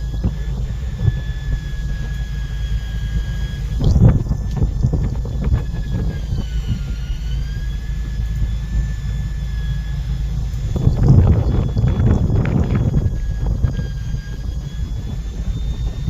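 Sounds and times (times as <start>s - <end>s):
boat engine droning: 0.0s - 16.0s
thin high whine: 0.0s - 16.0s.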